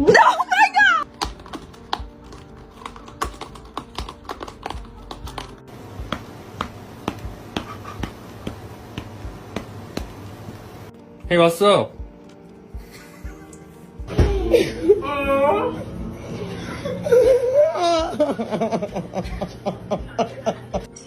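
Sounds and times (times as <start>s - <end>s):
music with sustained tones: 10.0s - 21.0s.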